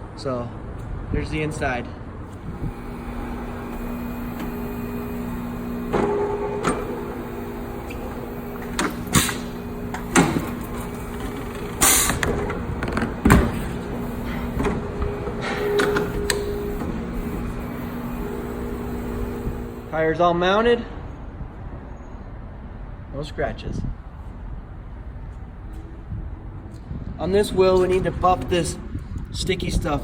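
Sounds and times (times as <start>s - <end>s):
tire changer motor hum: 2.3s - 20.0s.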